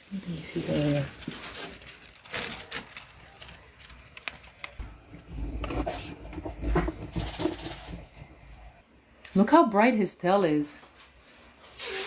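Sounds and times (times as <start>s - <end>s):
rustling: 0.0s - 8.8s.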